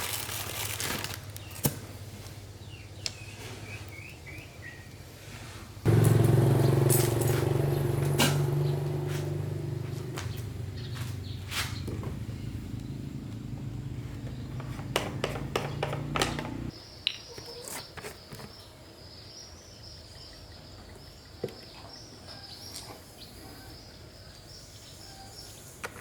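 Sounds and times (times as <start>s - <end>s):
lawn mower engine running: 5.9s - 16.7s.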